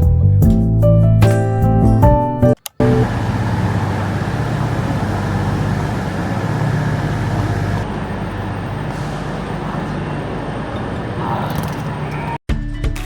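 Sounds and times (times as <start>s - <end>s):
vehicle running noise: 2.8s - 12.3s.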